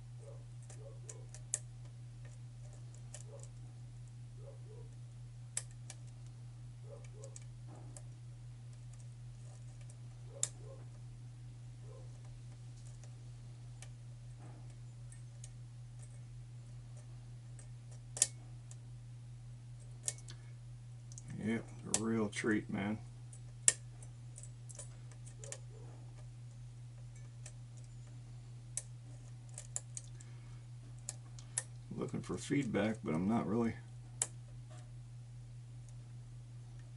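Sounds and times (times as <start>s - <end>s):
steady low hum: 0.0s - 36.9s.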